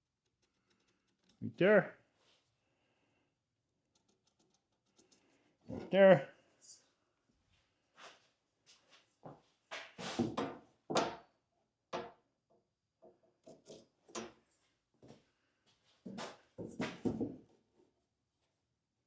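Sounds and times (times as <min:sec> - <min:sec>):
tools scraping and knocking: 0:03.9 - 0:05.4, 0:13.0 - 0:14.4.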